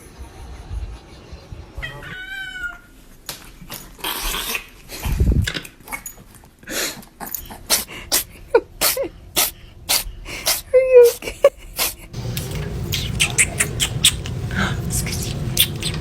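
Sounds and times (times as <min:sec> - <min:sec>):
cat meowing: 0:01.8 - 0:02.9.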